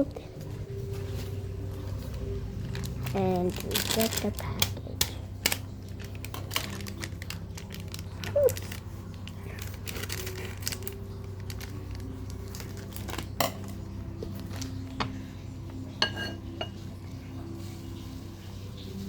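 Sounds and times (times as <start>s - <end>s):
dishes knocking and clinking: 16.0s - 16.8s.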